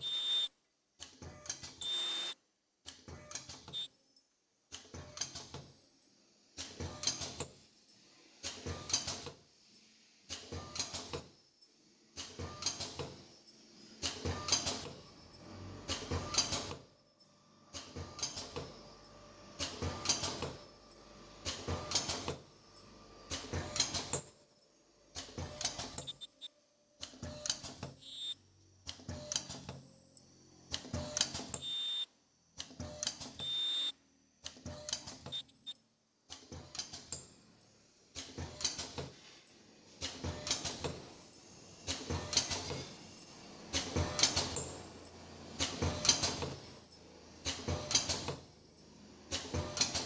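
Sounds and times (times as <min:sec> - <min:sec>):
welding machine mechanical clatter: 0:28.8 - 0:29.9, 0:36.3 - 0:37.4, 0:38.1 - 0:48.5, 0:49.3 - 0:50.0.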